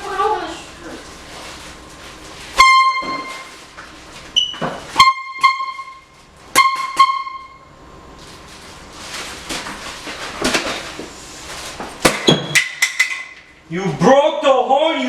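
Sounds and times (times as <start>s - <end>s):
air horn blasts: 2.5s - 3.6s, 4.9s - 7.8s.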